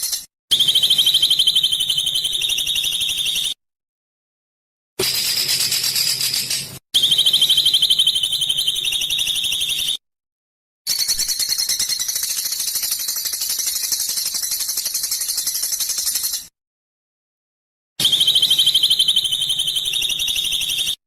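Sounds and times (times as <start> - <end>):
songbird buzzy rapid trill: 5.0 - 9.9.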